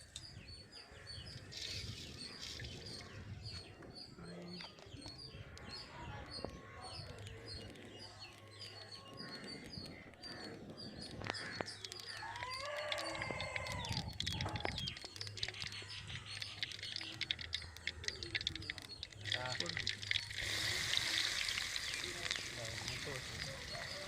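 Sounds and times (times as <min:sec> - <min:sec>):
birds chirping: 0:00.0 - 0:24.0
sharp clicks: 0:11.0 - 0:24.0.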